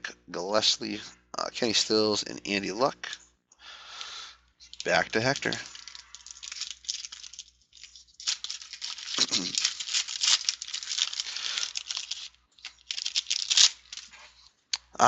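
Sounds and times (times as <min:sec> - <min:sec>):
wrapper crinkling and tearing: 0:04.0 - 0:14.8.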